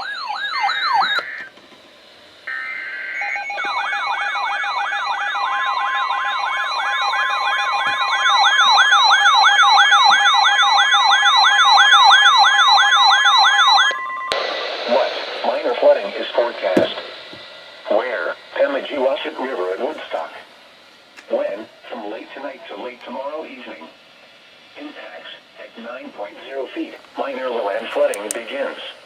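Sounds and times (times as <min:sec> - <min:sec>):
sweeping siren alarm: 0:00.0 - 0:01.5, 0:02.4 - 0:20.4
data tone burst: 0:02.5 - 0:20.4
steady tone: 0:11.0 - 0:27.8.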